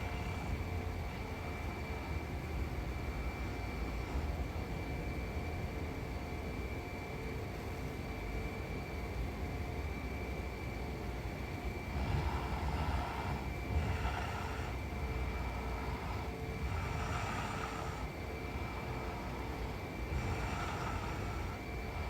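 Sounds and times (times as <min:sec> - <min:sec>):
faint high-pitched hum: 0:00.0 - 0:22.0
woman snoring: 0:11.8 - 0:22.0.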